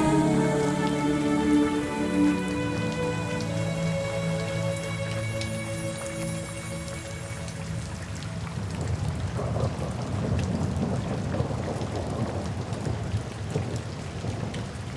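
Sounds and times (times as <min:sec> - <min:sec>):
soft background music: 0:00.0 - 0:10.3
steady rain falling: 0:00.0 - 0:14.9.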